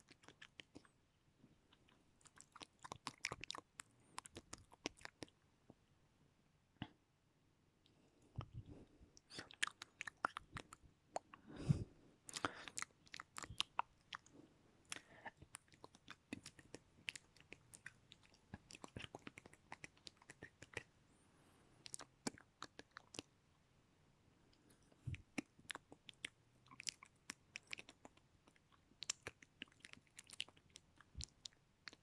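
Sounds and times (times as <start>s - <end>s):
wet mouth clicks and smacks: 0.0s - 0.9s, 1.7s - 5.4s, 9.2s - 11.4s, 12.3s - 14.3s, 14.9s - 20.9s, 21.8s - 23.3s, 25.0s - 32.0s.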